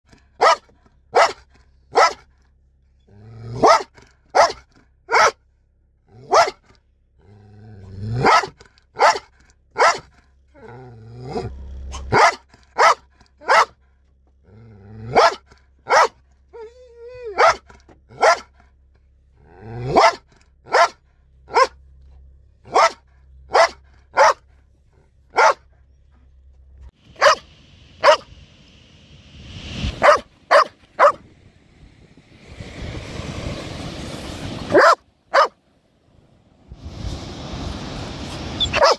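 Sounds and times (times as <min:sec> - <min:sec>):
dog barking aggressively: 0:00.2 - 0:02.3, 0:03.5 - 0:05.4, 0:06.2 - 0:06.7, 0:08.0 - 0:10.2, 0:11.4 - 0:13.8, 0:15.0 - 0:16.2, 0:17.3 - 0:18.6, 0:19.7 - 0:21.8, 0:22.6 - 0:24.6, 0:25.3 - 0:25.7, 0:27.2 - 0:27.4, 0:28.0 - 0:28.3, 0:30.0 - 0:31.2, 0:34.7 - 0:35.6, 0:38.7 - 0:38.9
dog growling: 0:07.2 - 0:08.3, 0:10.5 - 0:12.2
dog whining: 0:15.1 - 0:17.6.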